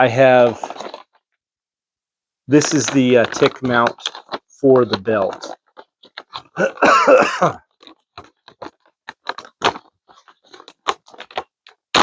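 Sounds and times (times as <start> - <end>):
throaty vocal noise: 6.4 - 7.7.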